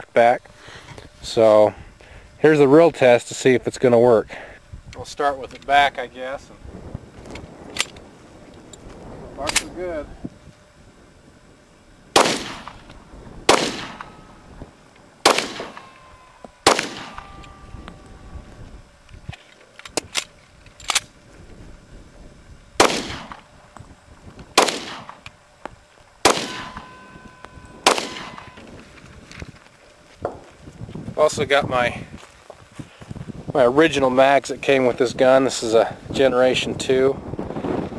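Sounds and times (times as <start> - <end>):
pistol shots: 12.1 - 12.9, 13.5 - 14.2, 15.2 - 16.0, 16.6 - 17.4, 22.8 - 23.5, 24.6 - 25.2, 26.2 - 27.1, 27.8 - 28.6
faint ringing tones: 12.7 - 22.8, 25.3 - 30.5.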